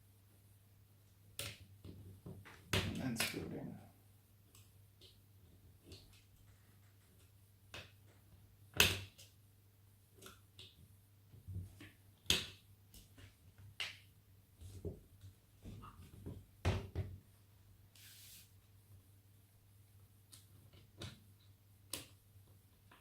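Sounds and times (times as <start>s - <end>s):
short hiss: 18.0s - 18.6s.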